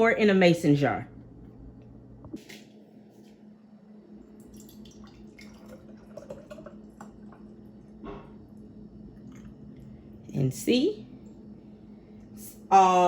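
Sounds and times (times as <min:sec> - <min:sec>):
steady low hum: 0:00.0 - 0:13.0
liquid dripping into glass jar: 0:04.3 - 0:10.0.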